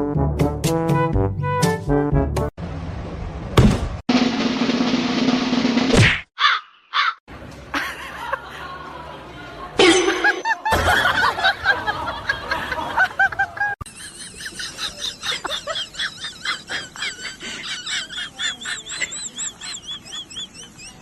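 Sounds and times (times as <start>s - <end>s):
birds calling: 6.4s - 7.2s, 14.0s - 21.0s.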